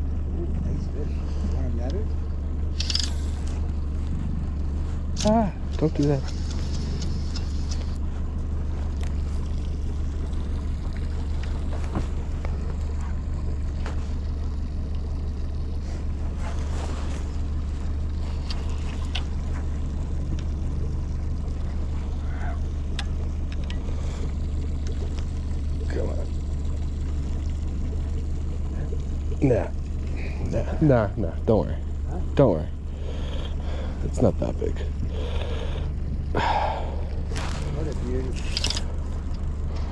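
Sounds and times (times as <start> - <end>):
outboard motor running: 0.0 - 39.9.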